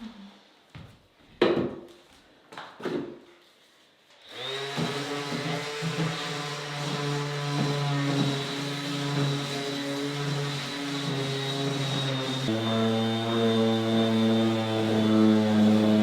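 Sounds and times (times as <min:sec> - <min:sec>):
power sander on wood: 0:04.2 - 0:16.0.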